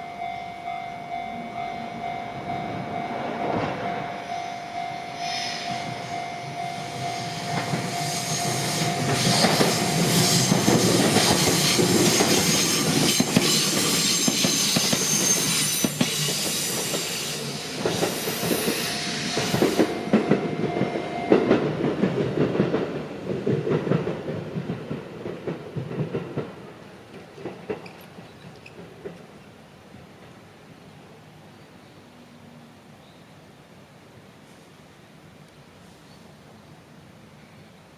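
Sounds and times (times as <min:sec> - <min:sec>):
level crossing warning tone: 0:00.0 - 0:11.5, 0:18.0 - 0:22.2
electric train running: 0:02.0 - 0:23.0
high wheel squeal: 0:04.1 - 0:21.5
wheels clacking over rail joints: 0:07.0 - 0:29.5.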